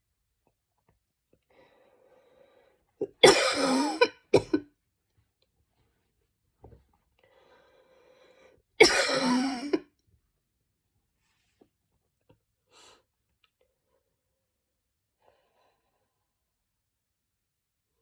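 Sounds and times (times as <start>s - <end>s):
woman barking cough: 3.0s - 4.6s, 8.8s - 9.8s.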